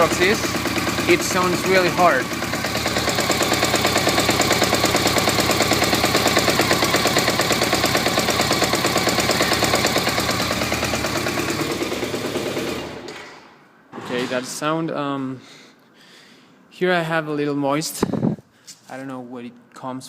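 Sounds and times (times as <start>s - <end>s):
motorcycle engine rattling: 0.0s - 13.2s.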